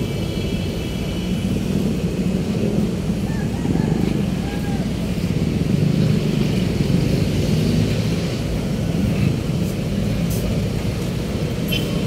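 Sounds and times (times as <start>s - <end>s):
heavy road traffic rumble: 0.0s - 12.0s.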